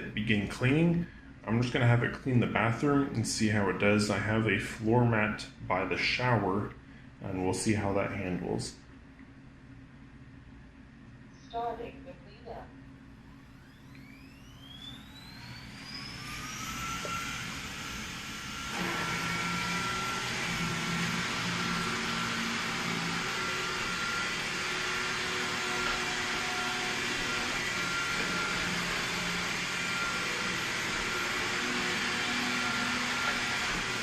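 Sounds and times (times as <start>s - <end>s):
robot vacuum motor whining: 13.5s - 34.0s.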